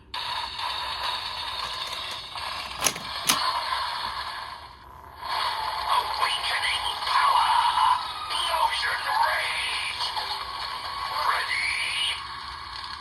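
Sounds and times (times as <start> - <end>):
plastic toy rustling: 1.6 - 3.5
sharp plastic clicks: 1.6 - 3.5.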